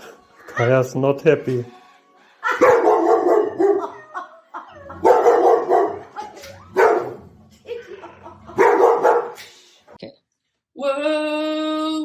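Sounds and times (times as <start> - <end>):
dog barking: 2.5 - 4.0, 5.0 - 7.3, 8.5 - 9.4.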